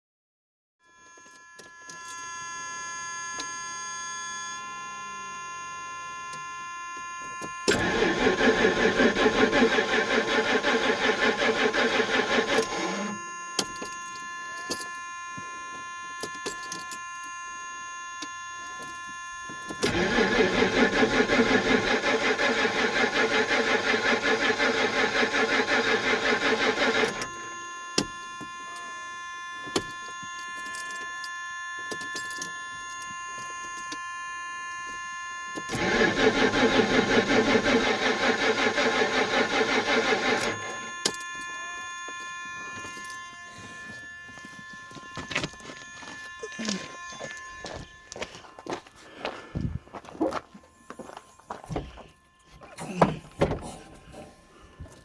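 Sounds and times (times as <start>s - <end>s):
faint steady whining tones: 0.8s - 55.0s
car starter cranking engine: 7.6s - 13.8s, 19.7s - 28.1s, 35.6s - 41.5s.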